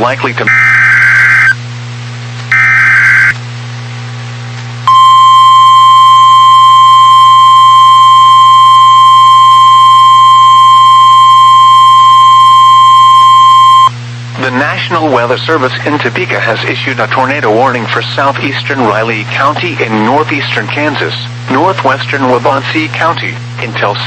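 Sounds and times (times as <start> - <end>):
low hum: 0.0 - 22.2
digital data bursts: 0.4 - 1.6, 2.5 - 3.4
steady alarm tone: 0.4 - 1.6, 2.5 - 3.4, 4.9 - 13.9.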